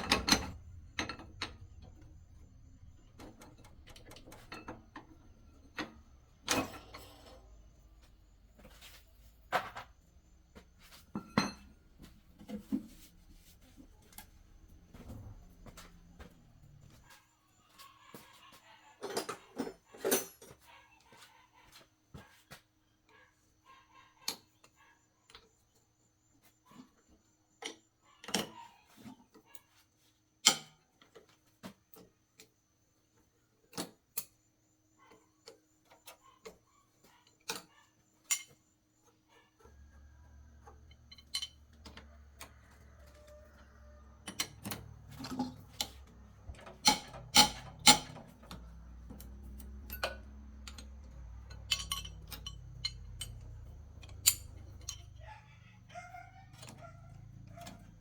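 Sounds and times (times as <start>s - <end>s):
tools clinking on metal: 11.1s - 11.8s, 37.5s - 38.6s, 40.9s - 42.0s, 44.2s - 55.3s
low steady hum: 44.2s - 57.8s.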